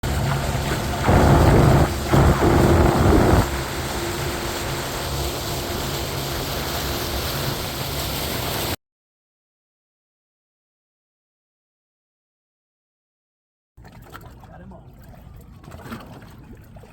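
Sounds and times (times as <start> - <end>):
wind and water rushing: 0.8 - 3.6
boat motor running: 1.0 - 3.5.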